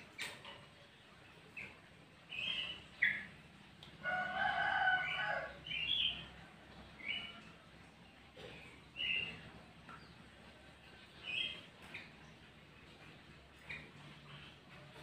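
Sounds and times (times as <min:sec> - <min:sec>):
rooster crowing: 0:04.0 - 0:05.6.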